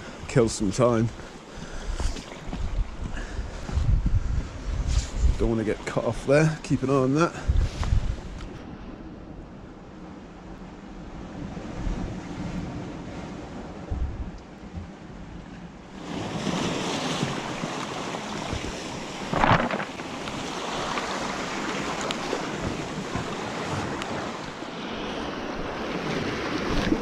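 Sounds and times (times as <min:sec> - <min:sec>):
wind buffeting microphone: 0:01.0 - 0:09.0, 0:11.2 - 0:27.0
sea surf washing on shore: 0:04.6 - 0:09.0, 0:09.9 - 0:27.0.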